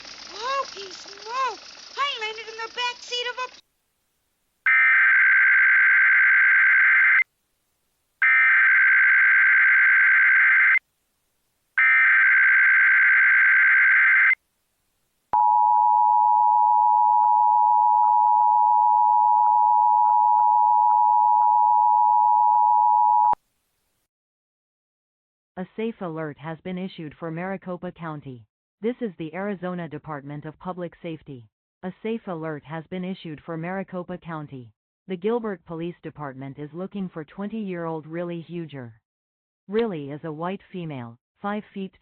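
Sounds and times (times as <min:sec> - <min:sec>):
harsh digital warble: 0:00.0 - 0:03.6.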